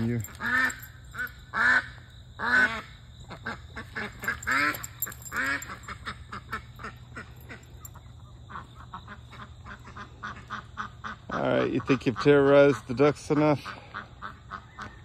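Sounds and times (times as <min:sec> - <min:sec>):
ducks quacking: 0:08.5 - 0:15.0.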